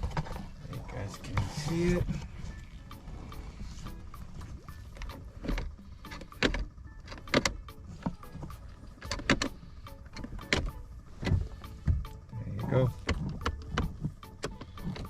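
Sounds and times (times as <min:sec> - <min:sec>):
gear shifter clicking: 0:00.0 - 0:15.0.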